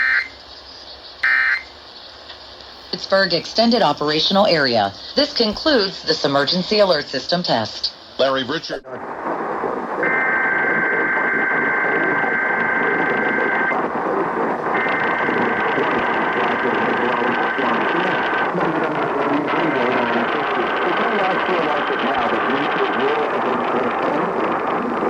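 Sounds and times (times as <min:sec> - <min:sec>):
screeching digital data burst: 0:00.0 - 0:00.4, 0:01.2 - 0:01.7
radio static: 0:00.0 - 0:25.0.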